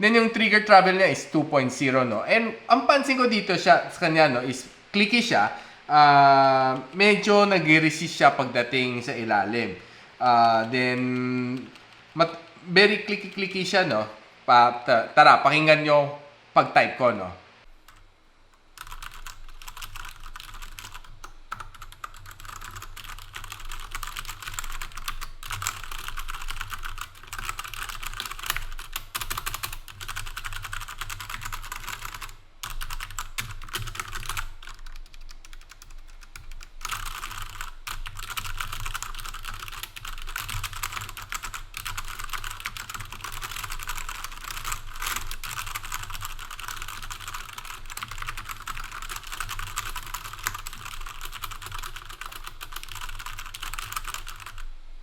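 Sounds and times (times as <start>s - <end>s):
fast mechanical keyboard typing: 18.6s - 54.7s.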